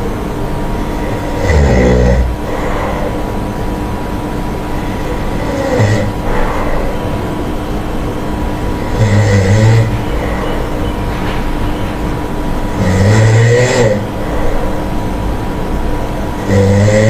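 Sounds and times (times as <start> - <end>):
steady background hum: 0.0 - 17.0
monkey snoring: 0.8 - 3.8, 4.8 - 7.4, 8.6 - 11.0, 12.7 - 15.0, 16.3 - 17.0.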